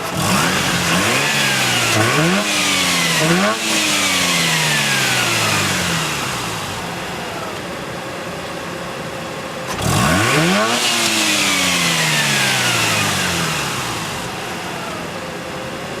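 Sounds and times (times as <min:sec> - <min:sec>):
rotary engine idling and revving: 0:00.0 - 0:16.0.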